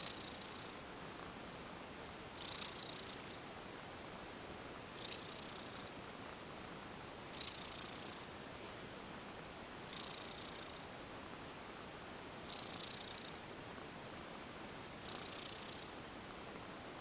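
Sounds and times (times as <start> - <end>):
cat purring: 0.0 - 1.4, 2.4 - 3.4, 5.0 - 6.4, 7.3 - 8.3, 9.9 - 10.9, 12.4 - 13.5, 15.0 - 16.0.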